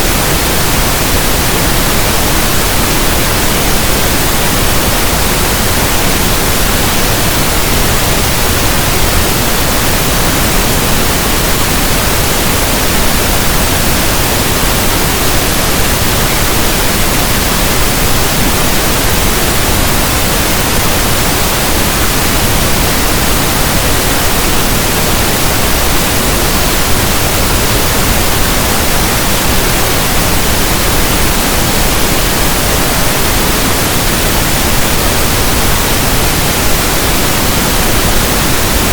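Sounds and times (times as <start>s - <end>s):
steady pink noise hiss: 0.0s - 38.9s.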